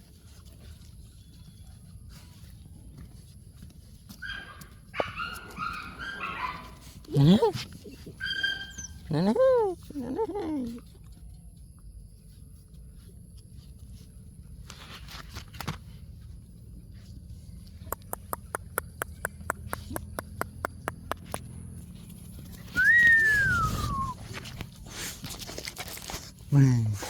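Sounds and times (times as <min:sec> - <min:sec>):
dog whining: 0:05.0 - 0:11.0, 0:22.6 - 0:25.1.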